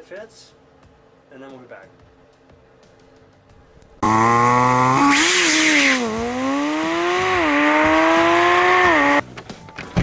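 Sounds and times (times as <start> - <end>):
engine revving: 4.0 - 9.2.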